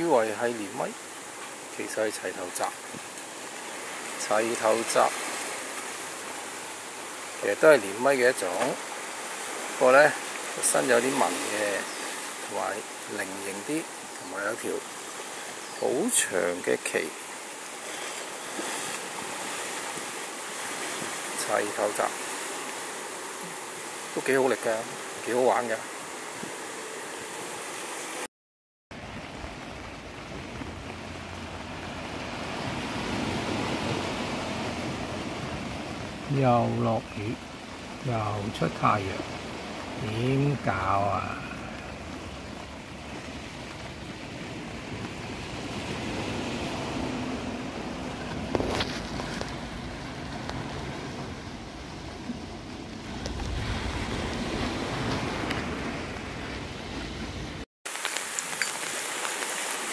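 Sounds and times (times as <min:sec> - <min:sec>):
surf: 0:00.0 - 0:28.3, 0:28.9 - 0:59.9
water washing on shore: 0:00.0 - 0:28.3, 0:28.9 - 0:59.9
wind on microphone: 0:41.3 - 0:57.6.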